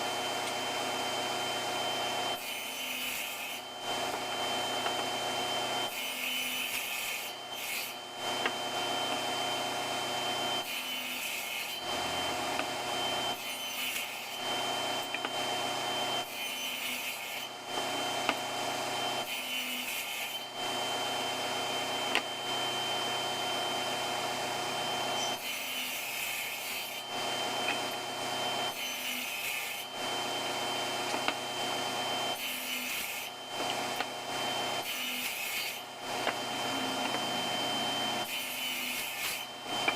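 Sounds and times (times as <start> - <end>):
table saw cutting wood: 0.0 - 39.9.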